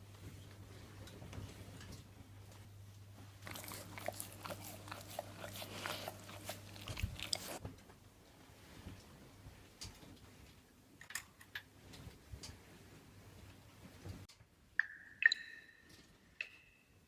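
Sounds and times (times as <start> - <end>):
low electrical hum: 0.0 - 17.0
dog licking: 3.4 - 7.6.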